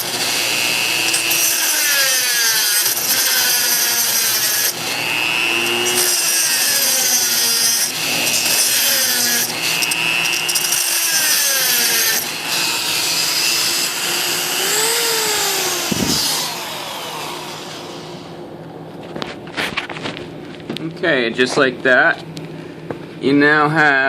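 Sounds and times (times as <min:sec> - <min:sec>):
rotary tool grinding metal: 0:00.0 - 0:18.4.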